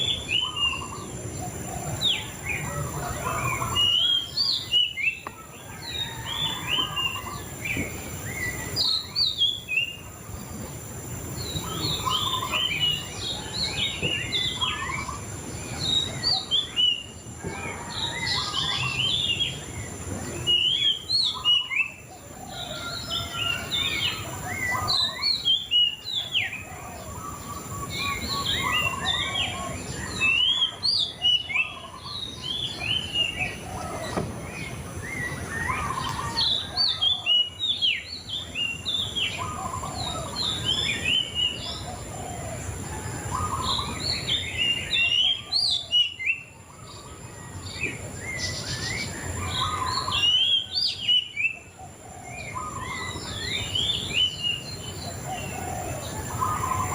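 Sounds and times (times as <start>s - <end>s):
songbird singing: 0.0s - 56.9s.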